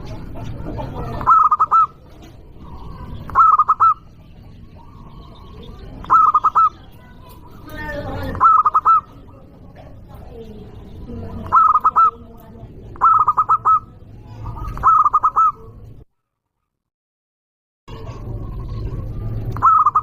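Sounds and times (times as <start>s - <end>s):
pitched bird call: 0.0s - 9.5s, 11.0s - 12.3s, 12.9s - 15.9s, 17.9s - 20.0s
dove cooing: 0.0s - 15.9s, 17.9s - 20.0s.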